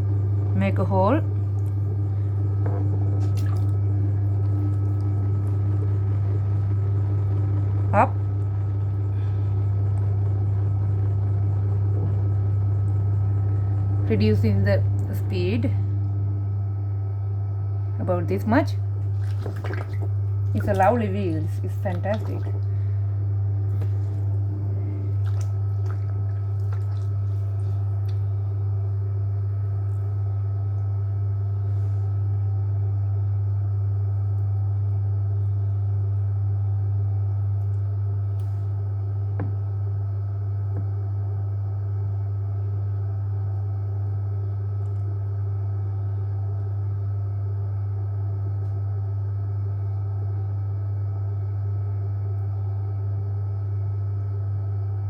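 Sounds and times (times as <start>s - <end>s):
pottery wheel motor humming: 0.0s - 55.0s
wet clay squelches: 19.0s - 22.9s, 23.7s - 28.3s.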